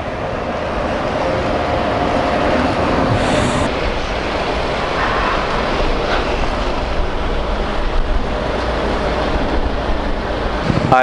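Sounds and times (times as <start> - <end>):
wind and road noise: 0.0 - 11.0
low rumble: 2.9 - 8.2.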